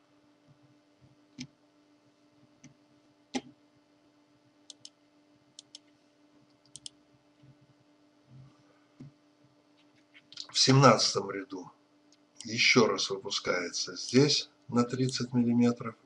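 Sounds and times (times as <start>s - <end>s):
faint steady hum: 0.0s - 16.0s
computer mouse clicks: 2.6s - 3.5s, 4.7s - 5.0s, 5.6s - 5.9s, 6.5s - 7.6s.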